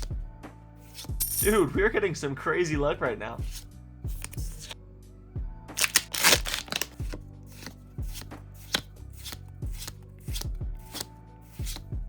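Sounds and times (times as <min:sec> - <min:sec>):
background music with steady beat: 0:00.0 - 0:12.0
trading cards slapping and rustling: 0:00.8 - 0:01.6, 0:03.4 - 0:04.8, 0:05.8 - 0:11.9.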